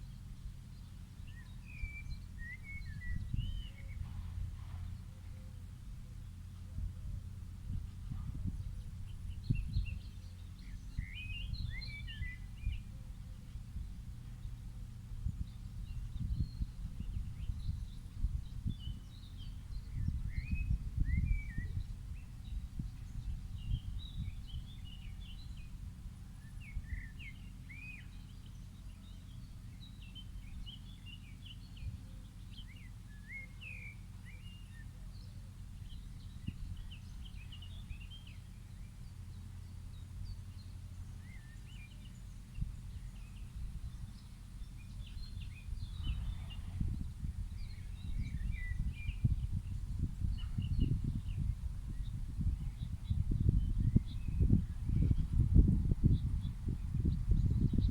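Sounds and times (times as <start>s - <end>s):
birds chirping: 7.7s - 57.9s
low rumble: 35.7s - 57.9s.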